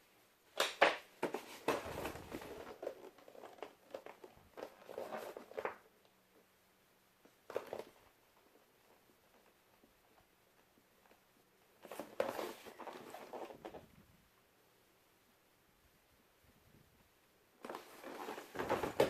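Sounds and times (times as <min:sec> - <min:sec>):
product unpacking knocks and rustles: 0:17.7 - 0:19.0.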